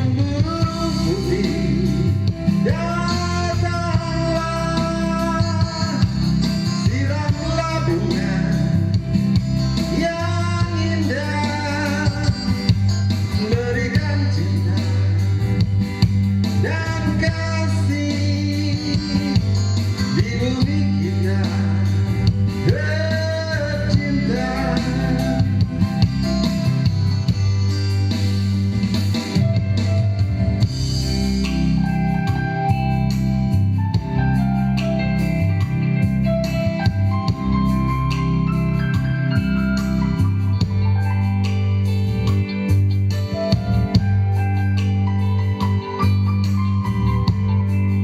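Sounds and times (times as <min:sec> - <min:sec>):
pop song: 0:00.0 - 0:30.0.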